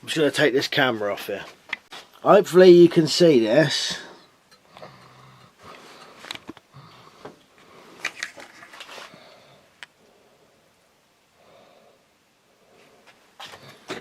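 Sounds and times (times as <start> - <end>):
plastic pieces rustling and clicking: 8.0 - 9.2.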